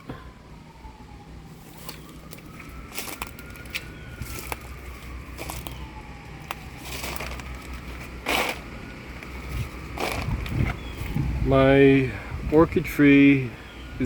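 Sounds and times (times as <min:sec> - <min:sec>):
distant siren: 0:00.0 - 0:14.0
branches and leaves crunching: 0:01.5 - 0:11.4.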